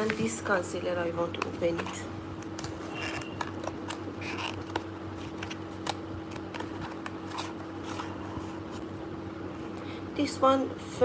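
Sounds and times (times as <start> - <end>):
steady low hum: 0.0 - 11.0
packaging clicking and rustling: 1.3 - 8.1.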